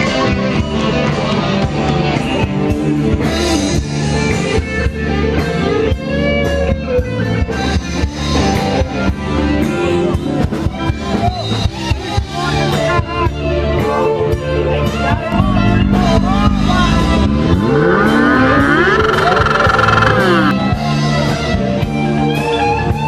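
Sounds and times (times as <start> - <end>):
bass: 0.0 - 23.0
rock music with electric guitar: 0.0 - 23.0
drum kit: 15.3 - 20.7.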